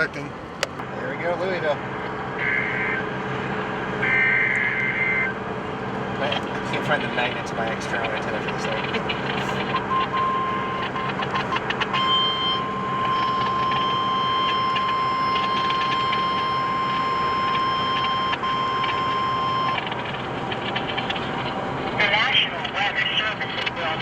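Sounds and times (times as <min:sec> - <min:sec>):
car road noise: 0:00.0 - 0:24.0
weather radio alarm beep: 0:04.0 - 0:05.4, 0:06.2 - 0:20.2.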